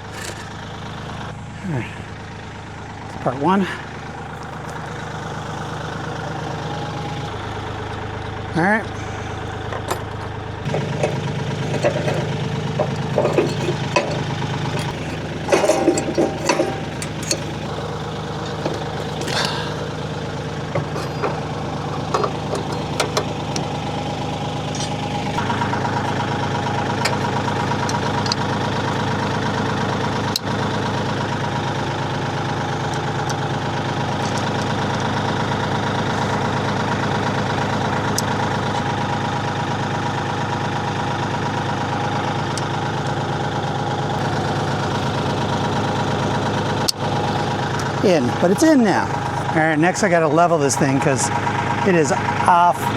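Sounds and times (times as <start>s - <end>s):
metallic clanks and knocks: 0.0s - 0.5s, 9.7s - 30.5s
tractor diesel engine idling: 0.0s - 52.9s.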